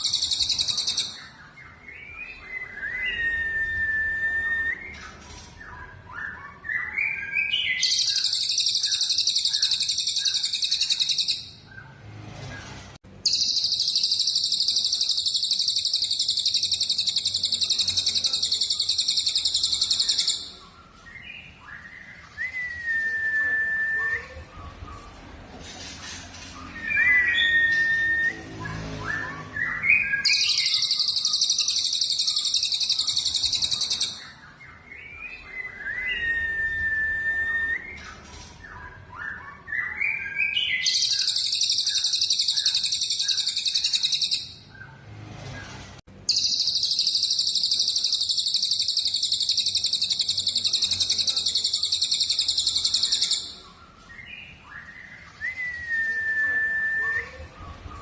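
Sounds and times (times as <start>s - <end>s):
high bird trills: 0.0s - 3.3s, 6.8s - 11.7s, 13.2s - 20.7s, 29.1s - 36.2s, 40.1s - 44.7s, 46.3s - 53.7s
whistled bird notes: 0.0s - 11.9s, 13.2s - 44.9s, 46.3s - 58.0s.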